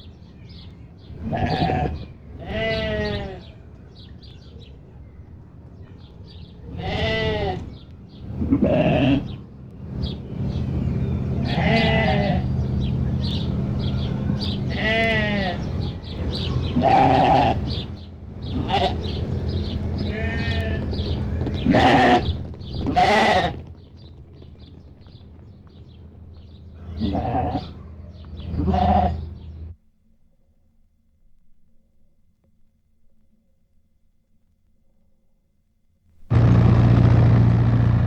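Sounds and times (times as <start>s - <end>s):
sheep bleating: 1.2s - 3.5s, 6.7s - 7.7s, 8.4s - 9.4s, 11.4s - 12.6s, 14.0s - 17.9s, 18.5s - 19.2s, 19.9s - 23.6s, 26.8s - 27.8s, 28.4s - 29.5s
steady low hum: 6.5s - 29.8s, 36.3s - 38.0s.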